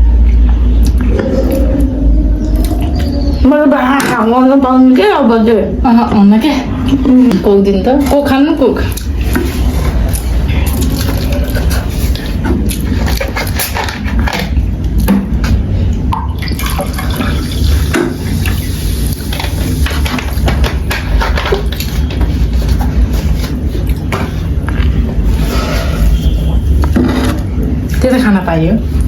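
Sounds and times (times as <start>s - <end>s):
liquid sloshing: 6.2s - 29.0s
person gulping drink: 8.9s - 20.5s.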